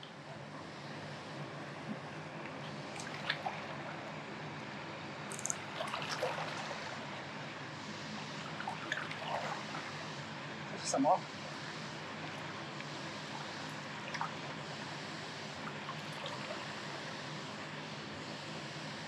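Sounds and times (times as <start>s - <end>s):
river water running: 1.9s - 7.4s.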